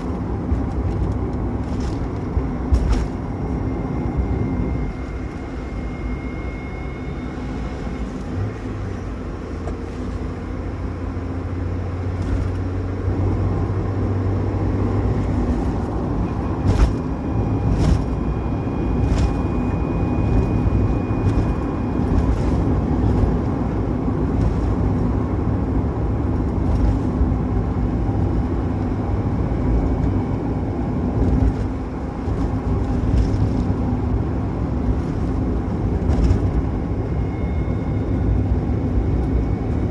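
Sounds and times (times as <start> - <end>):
car engine and road noise: 0.0 - 39.9
thin high whine: 2.7 - 9.1, 15.0 - 24.7.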